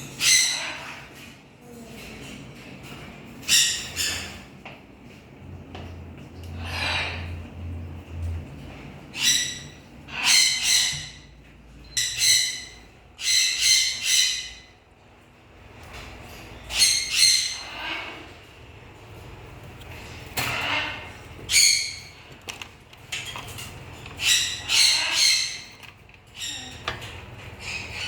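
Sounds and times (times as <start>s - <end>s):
parrot squawking: 0.1s - 1.1s, 9.1s - 11.3s, 12.0s - 14.8s, 16.6s - 18.4s, 20.4s - 22.2s, 24.1s - 26.8s.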